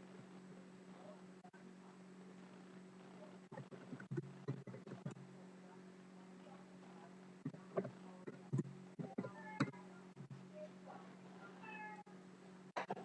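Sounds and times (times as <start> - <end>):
low electrical hum: 0.0 - 13.0
cat meowing: 11.6 - 12.1.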